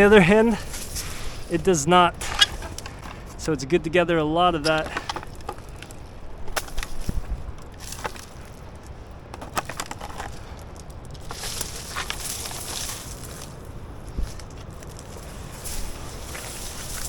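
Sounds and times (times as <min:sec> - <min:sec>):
dry debris crackling and rustling: 0:00.0 - 0:17.0
wind rumble on microphone: 0:05.2 - 0:17.0.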